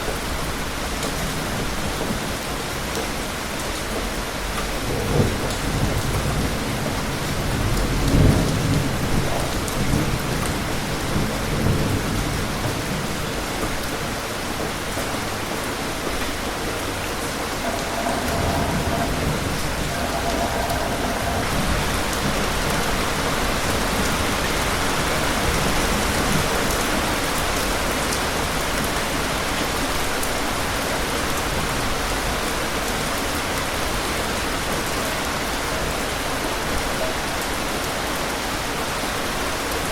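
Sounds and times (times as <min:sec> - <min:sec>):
steady rain falling: 0:00.0 - 0:39.9
distant thunder rumbles: 0:16.9 - 0:26.4.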